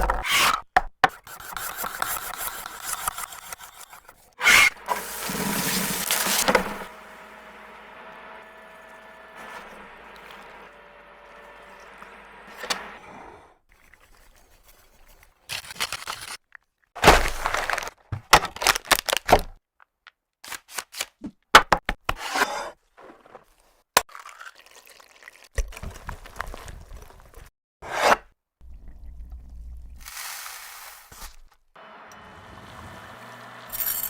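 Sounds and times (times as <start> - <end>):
scraping and rustling: 1.2 - 7.8.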